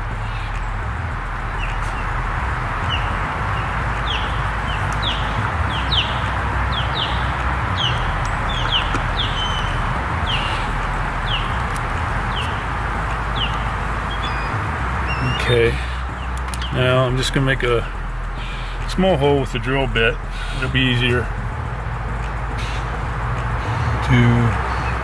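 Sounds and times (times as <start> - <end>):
small bird chirping: 0.0 - 16.9
background hiss and low rumble: 0.0 - 25.0.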